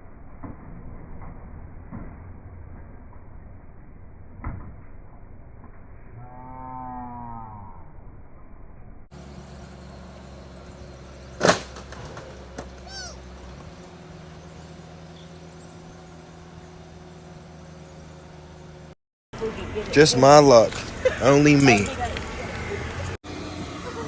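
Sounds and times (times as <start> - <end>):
car engine running: 9.1 - 24.0
car crash crunch: 11.4 - 12.8.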